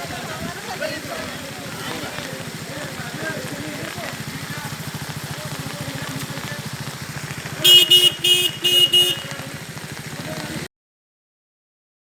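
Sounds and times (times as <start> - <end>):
engine running: 0.0 - 10.7
vehicle horn honking: 7.6 - 9.5.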